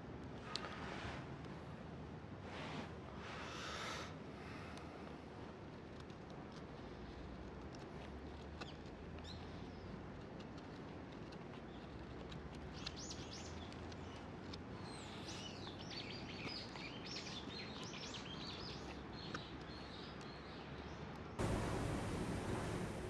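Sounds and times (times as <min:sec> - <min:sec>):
faint outdoor background: 0:00.0 - 0:23.0
small birds chirping: 0:08.3 - 0:23.0.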